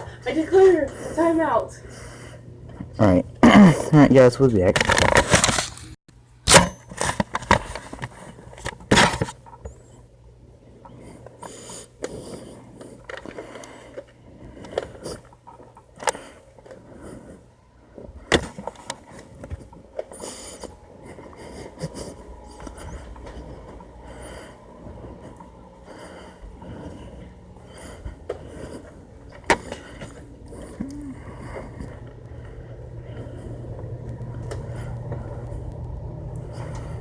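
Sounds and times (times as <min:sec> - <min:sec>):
clicks scrapes and rustling: 0:04.7 - 0:06.0.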